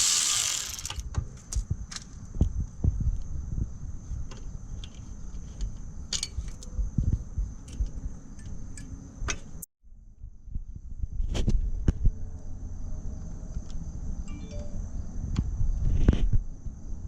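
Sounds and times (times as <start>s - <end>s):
faint high whine: 14.2s - 15.3s.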